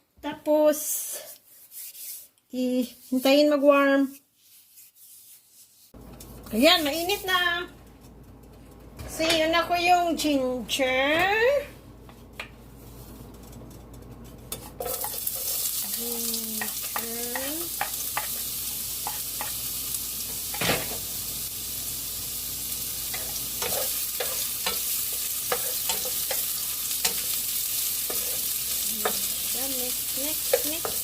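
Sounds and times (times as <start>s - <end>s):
ginger sizzling in oil: 14.5s - 31.0s.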